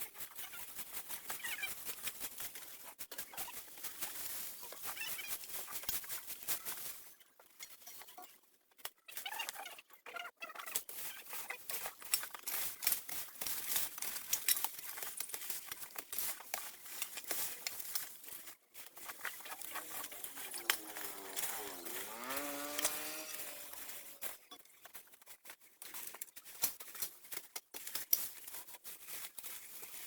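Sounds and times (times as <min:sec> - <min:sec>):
scraping and crackling brush: 0:10.8 - 0:30.0.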